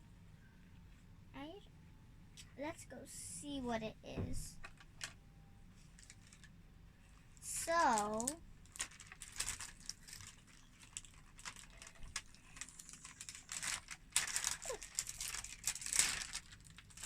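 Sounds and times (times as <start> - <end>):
packaging crinkling and rustling: 5.8 - 6.6, 7.4 - 17.0.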